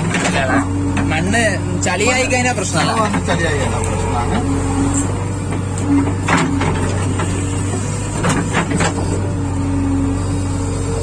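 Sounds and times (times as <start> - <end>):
diesel engine running: 0.0 - 11.0
machine knocks and clatters: 5.5 - 9.3.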